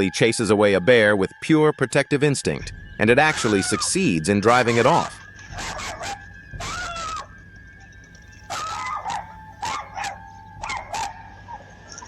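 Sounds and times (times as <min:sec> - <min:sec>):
dog barking: 0:04.7 - 0:07.2, 0:08.5 - 0:11.6.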